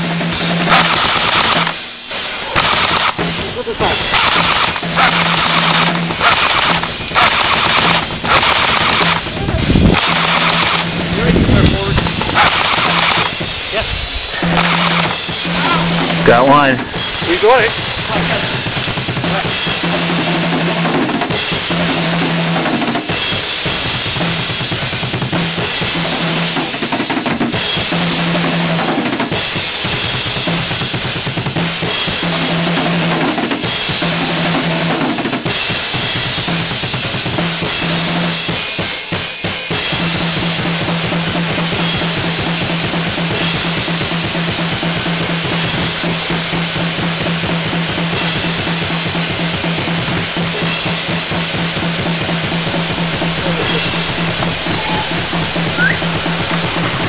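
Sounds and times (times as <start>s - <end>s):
drum kit beat: 2.6s - 29.3s, 40.0s - 57.0s.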